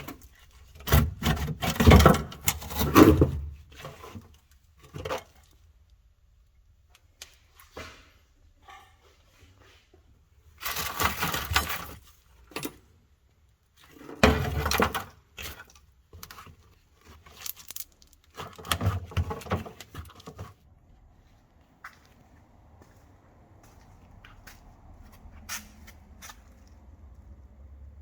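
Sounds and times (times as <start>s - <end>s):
clattering and rattling of hard parts: 0.0s - 5.7s, 10.5s - 13.1s, 13.8s - 20.7s.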